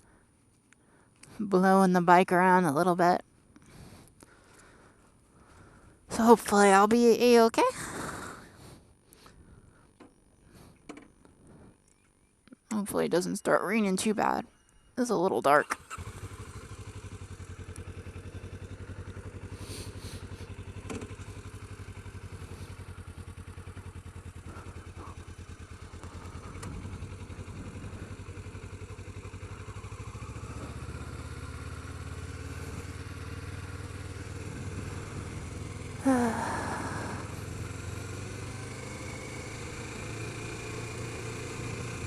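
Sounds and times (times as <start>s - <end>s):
motorcycle engine running: 15.7s - 42.0s.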